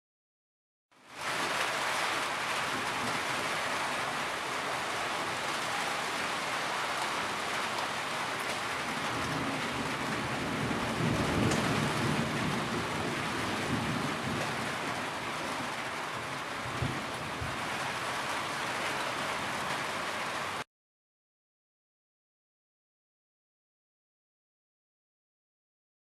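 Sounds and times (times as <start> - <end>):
heavy rain falling: 1.0 - 20.7.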